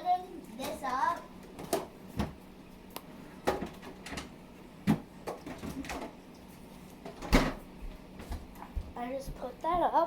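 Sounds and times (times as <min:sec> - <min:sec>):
kitchen items clattering: 0:04.9 - 0:06.2.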